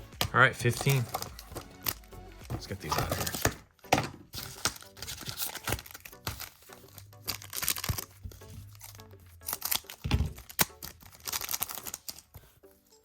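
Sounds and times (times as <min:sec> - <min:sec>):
background music: 0:00.0 - 0:13.0
wrapper tearing and crinkling: 0:00.7 - 0:02.1, 0:04.4 - 0:12.3.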